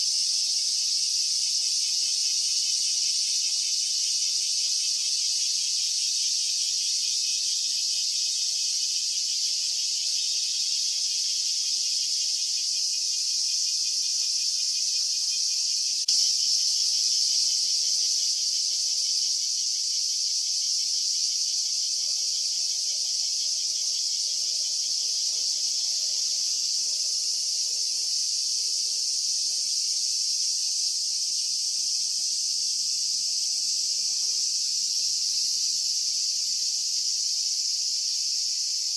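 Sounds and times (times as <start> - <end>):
cicadas buzzing: 0.0 - 38.9.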